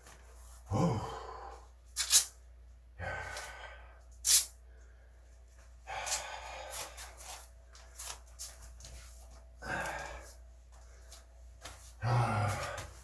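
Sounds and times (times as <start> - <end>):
man breathing hard: 0.6 - 1.8, 3.0 - 7.9, 9.6 - 11.3, 11.9 - 13.0.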